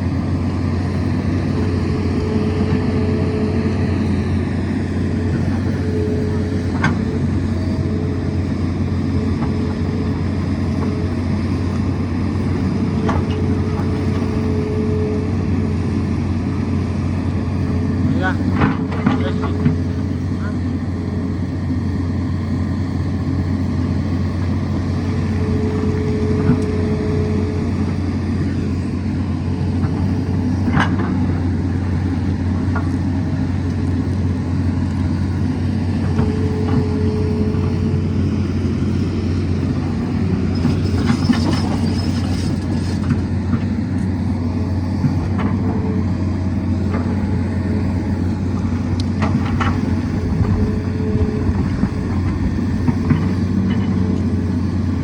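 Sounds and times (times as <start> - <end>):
engine whine: 0.0 - 55.0
excavator diesel engine running: 0.0 - 55.0.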